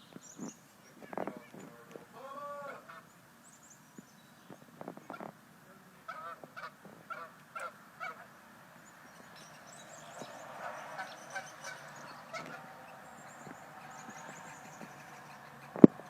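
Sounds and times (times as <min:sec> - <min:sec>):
geese honking: 0:02.0 - 0:03.2, 0:05.0 - 0:08.4, 0:10.1 - 0:16.0
high bird chirps: 0:07.1 - 0:16.0.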